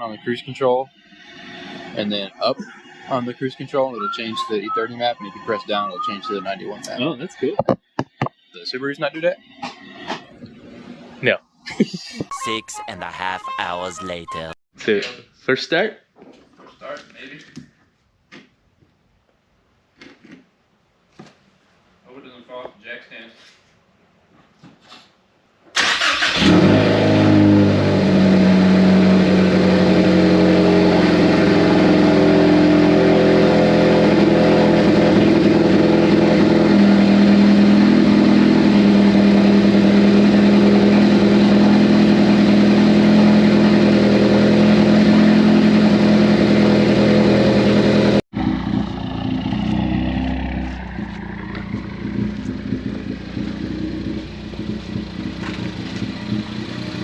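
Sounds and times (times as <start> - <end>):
rough engine sound: 26.4 - 57.0
car engine idling: 50.8 - 57.0.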